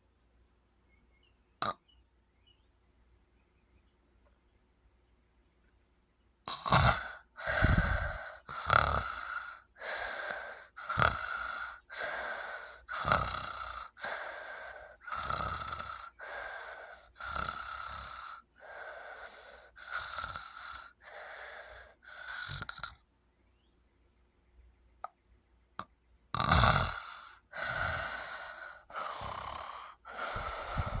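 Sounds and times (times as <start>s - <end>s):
gasping snores: 6.5s - 23.0s, 26.4s - 31.0s
noisy breathing: 6.5s - 23.0s, 26.4s - 31.0s
loud intake of breath: 27.6s - 31.0s.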